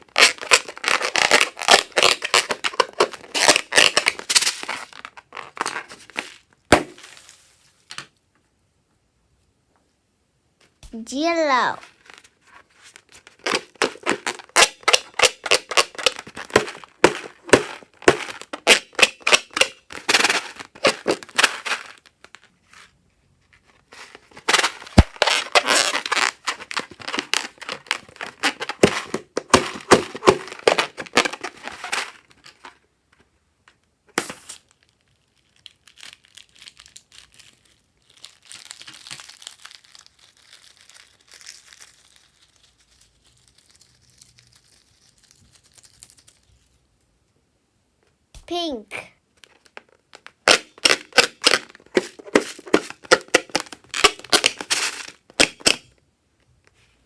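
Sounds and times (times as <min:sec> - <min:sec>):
slime crackling and popping: 0:34.3 - 0:46.4.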